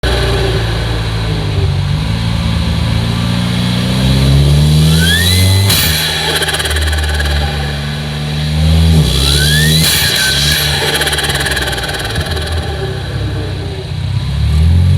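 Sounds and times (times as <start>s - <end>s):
car engine revving: 0.0s - 14.9s
turbo whistle: 4.8s - 14.0s
turbo flutter chatter: 5.0s - 13.9s.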